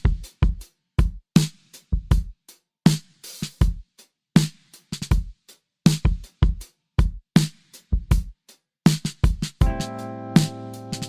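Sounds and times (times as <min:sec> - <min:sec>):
kick and snare drum beat: 0:00.0 - 0:11.0.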